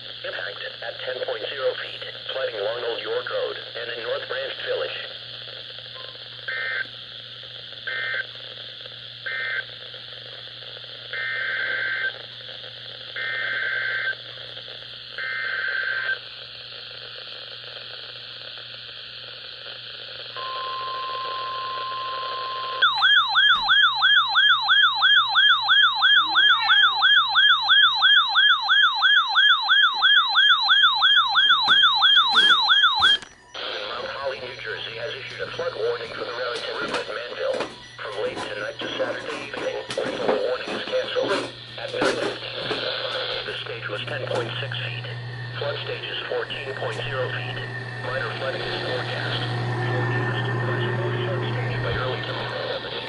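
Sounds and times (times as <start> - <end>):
radio static: 0.0 - 20.4, 26.0 - 27.1, 31.2 - 53.0
steady warning alarm tone: 5.9 - 7.0, 7.8 - 8.4, 9.2 - 9.7, 11.1 - 12.2, 20.3 - 53.0
siren-like warble: 20.4 - 53.0
warbling data tone bursts: 20.4 - 53.0.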